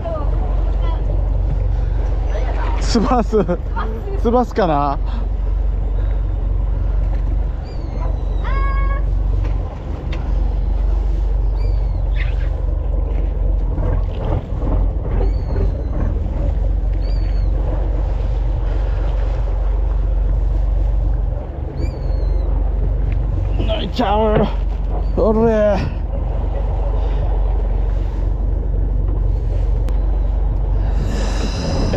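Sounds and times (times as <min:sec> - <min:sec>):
boat engine rumble: 0:00.0 - 0:31.9
wind on microphone: 0:24.8 - 0:31.9.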